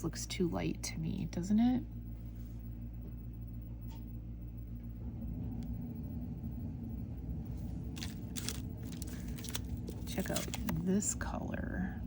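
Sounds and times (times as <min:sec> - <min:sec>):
low steady hum and rumble: 0:00.0 - 0:12.0
crackly rustling: 0:07.9 - 0:10.9.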